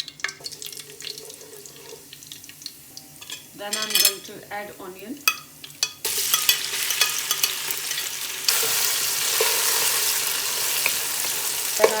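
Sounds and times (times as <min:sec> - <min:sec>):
onion sizzling in hot oil: 0:00.0 - 0:12.0
spoon scraping a pan: 0:03.2 - 0:04.4, 0:05.2 - 0:12.0.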